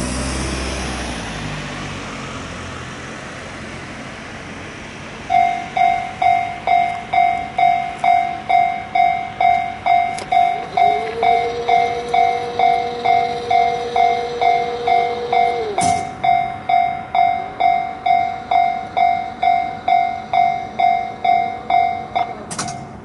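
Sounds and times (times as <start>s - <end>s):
road vehicle passing: 0.0s - 23.0s
steady low tone: 3.2s - 23.0s
level crossing alarm clanging: 5.3s - 23.0s.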